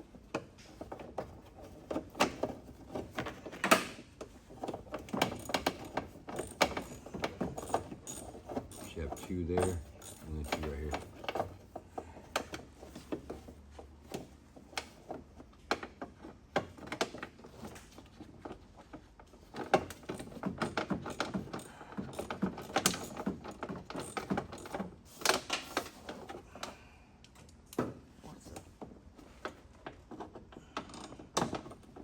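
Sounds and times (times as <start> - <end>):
small metal clatter: 0.5 - 11.8
hand tools clicking: 5.3 - 11.4.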